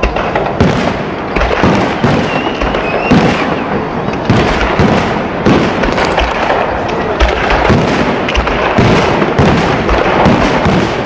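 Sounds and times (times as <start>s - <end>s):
fireworks bangs and crackles: 0.0s - 11.0s
firework rising whistle: 2.1s - 4.2s.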